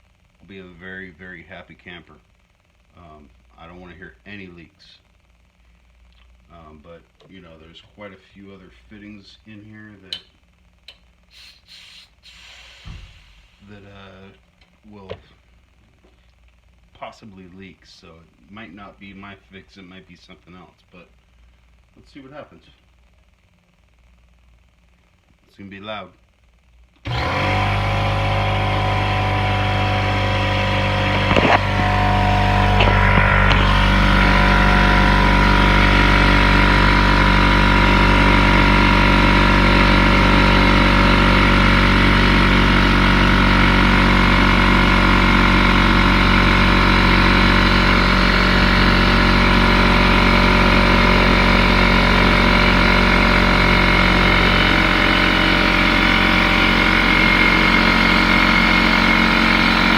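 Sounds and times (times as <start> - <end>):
air compressor running: 11.3 - 14.0, 27.0 - 59.9.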